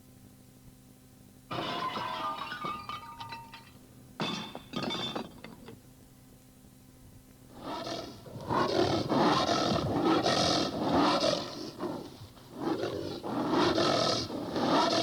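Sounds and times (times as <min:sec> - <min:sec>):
animal roars: 0:07.6 - 0:15.0.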